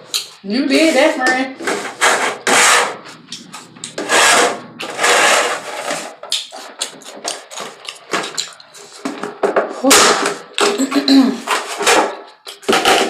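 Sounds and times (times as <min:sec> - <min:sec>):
wet mouth clicks: 0:03.0 - 0:05.0, 0:06.3 - 0:08.9
chewing crunchy chips: 0:06.2 - 0:09.0.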